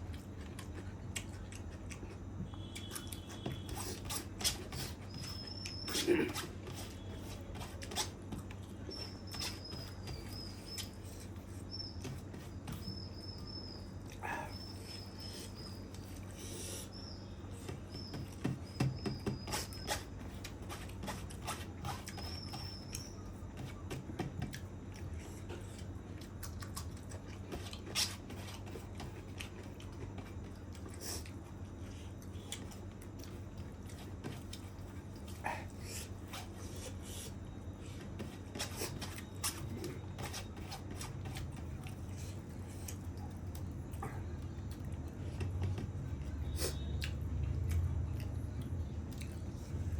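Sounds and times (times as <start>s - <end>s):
chewing: 0.0s - 6.4s, 24.5s - 37.4s, 40.8s - 49.9s.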